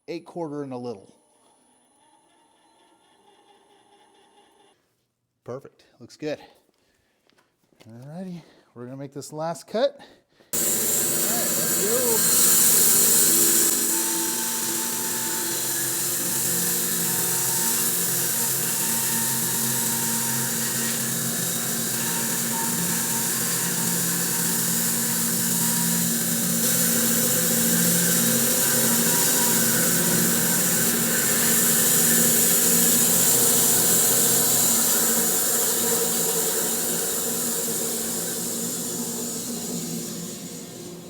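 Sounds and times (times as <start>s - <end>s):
bandsaw motor hum: 10.6s - 41.0s
saw cutting hiss: 10.6s - 41.0s.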